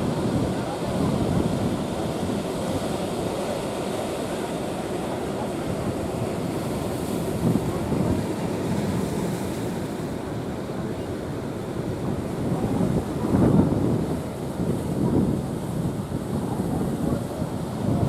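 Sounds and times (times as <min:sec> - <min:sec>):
big waves breaking: 0:00.0 - 0:18.0
wind blowing across microphone: 0:00.0 - 0:18.0.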